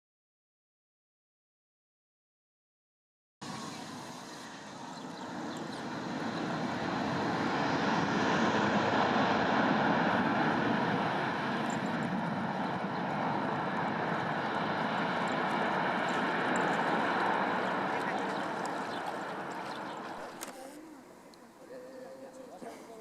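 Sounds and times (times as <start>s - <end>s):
jet engines roaring: 3.4s - 21.7s.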